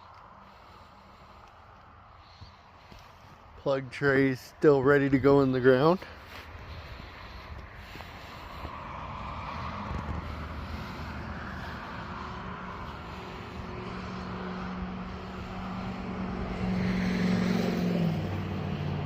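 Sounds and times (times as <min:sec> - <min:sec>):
passing engine drone: 0:06.0 - 0:19.0.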